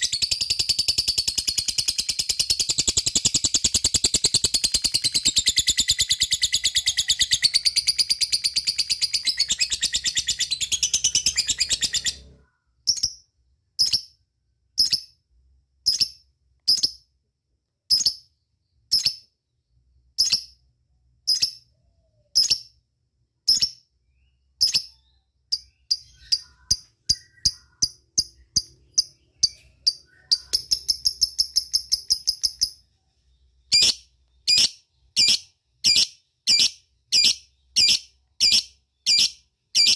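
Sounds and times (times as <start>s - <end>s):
bird chattering trill: 0.0s - 13.1s, 24.6s - 32.8s
sharp bird chirps: 0.0s - 15.2s, 15.8s - 17.2s, 17.8s - 39.9s.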